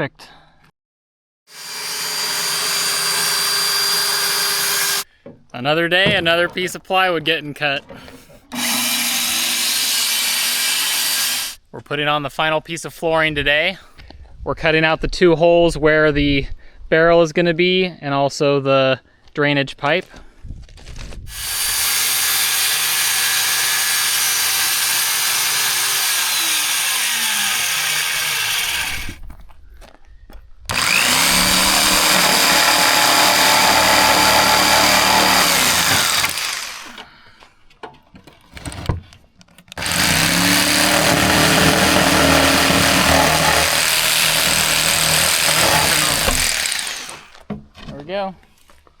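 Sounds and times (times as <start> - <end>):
power tool cutting plywood: 1.5 - 5.0, 8.4 - 11.6, 21.3 - 29.2, 30.7 - 37.0, 39.8 - 47.4.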